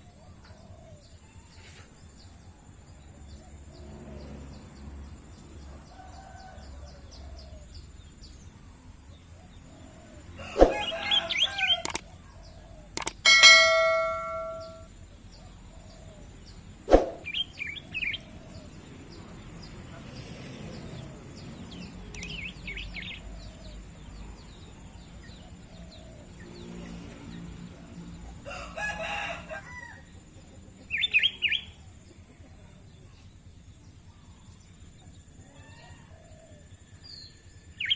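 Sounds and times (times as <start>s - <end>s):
songbird chirping: 0.0s - 28.2s, 29.2s - 37.9s
sharp click: 11.8s - 12.1s, 13.0s - 14.8s
pitched tone: 13.3s - 14.9s.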